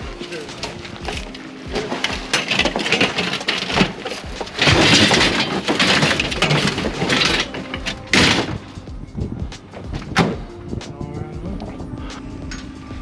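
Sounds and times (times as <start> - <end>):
wood cracking and splintering: 0.0 - 8.8.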